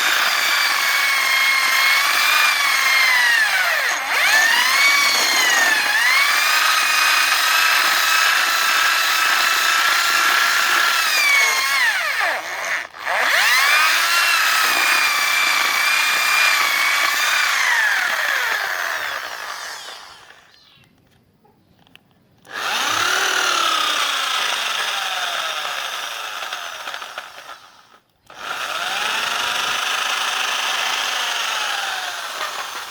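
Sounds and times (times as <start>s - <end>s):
electric drill motor whine: 0.0s - 20.7s, 22.5s - 32.9s.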